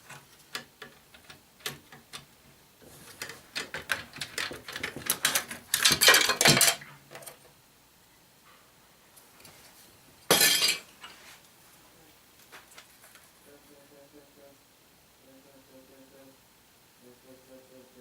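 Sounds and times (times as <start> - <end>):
tools clattering on workbench: 0.0 - 7.4, 10.3 - 10.9.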